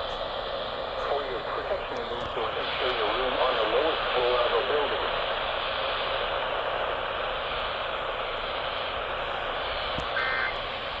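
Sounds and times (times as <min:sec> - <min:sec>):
radio static hiss: 0:00.7 - 0:11.0
two-tone warbling data burst: 0:10.1 - 0:10.6.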